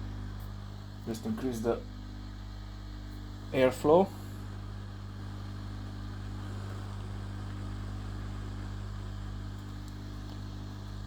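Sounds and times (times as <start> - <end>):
constant low hum: 0.0 - 11.0
hot-air station rushing hiss: 3.4 - 11.0.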